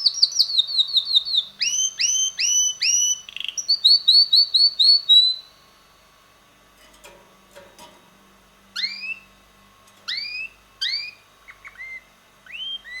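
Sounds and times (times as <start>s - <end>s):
canary singing: 0.0s - 5.8s, 8.8s - 9.4s, 10.1s - 13.0s.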